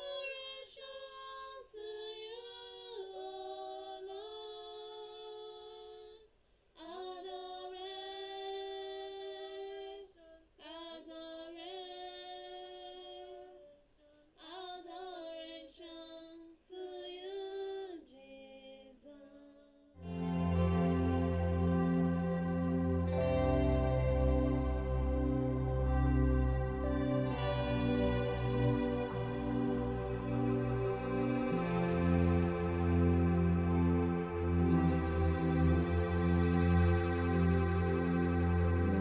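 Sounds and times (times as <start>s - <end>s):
woman singing unaccompanied: 0.0s - 21.8s.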